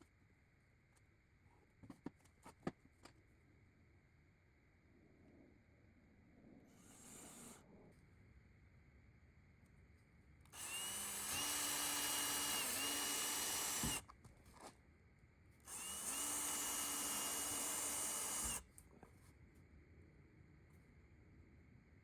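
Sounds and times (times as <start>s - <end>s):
power drill drilling into wood: 10.6s - 14.0s, 15.7s - 18.6s.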